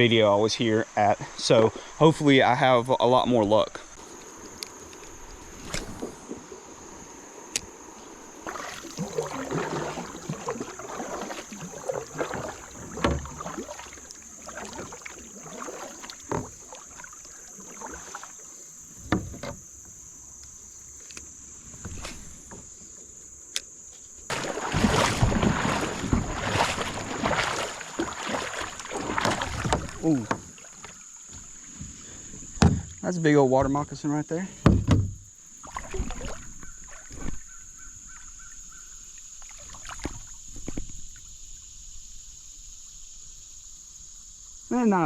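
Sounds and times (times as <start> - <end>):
paddle strokes in water: 8.0 - 20.2, 23.9 - 33.0, 35.5 - 41.8
water splashing and dripping: 8.4 - 18.8, 24.3 - 33.2, 35.6 - 41.7
sharp knocks: 34.6 - 35.2.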